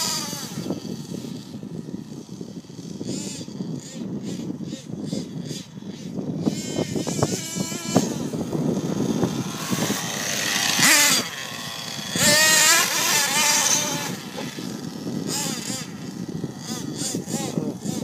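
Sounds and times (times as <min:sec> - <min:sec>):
nitro engine revving: 0:00.0 - 0:18.0.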